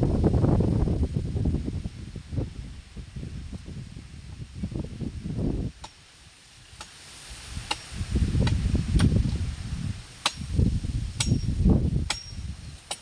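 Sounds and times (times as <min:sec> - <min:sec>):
low rumbling and rustling: 0:00.0 - 0:13.0.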